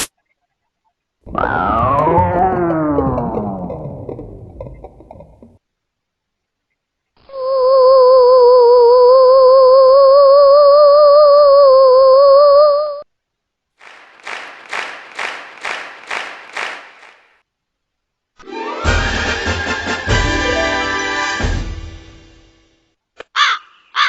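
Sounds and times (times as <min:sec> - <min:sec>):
wavering hum-like held note: 0:01.3 - 0:05.4.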